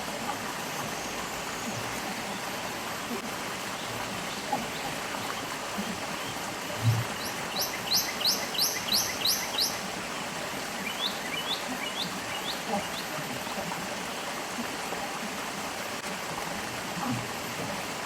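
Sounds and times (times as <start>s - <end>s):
stream water running: 0.0s - 18.0s
bird chirping: 7.1s - 9.8s, 10.8s - 13.1s.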